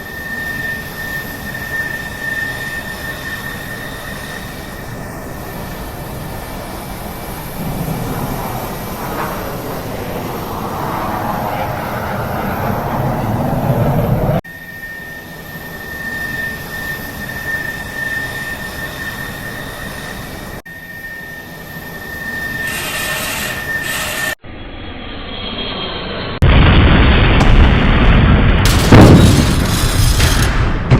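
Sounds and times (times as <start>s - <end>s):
jet engines whining: 0.0s - 30.9s
loud rushing crash blast: 26.4s - 30.9s.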